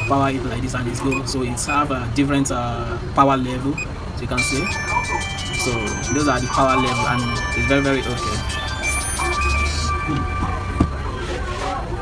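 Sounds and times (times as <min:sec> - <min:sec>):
background music with held tones: 0:04.4 - 0:11.4.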